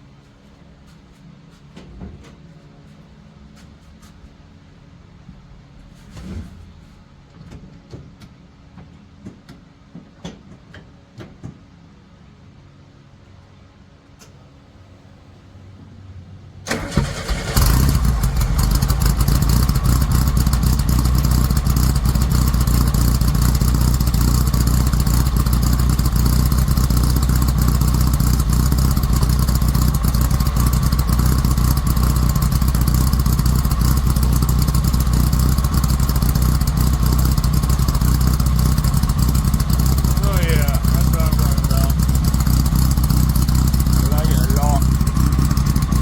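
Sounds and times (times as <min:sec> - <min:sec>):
car engine cranking and idling: 0:14.2 - 0:46.0.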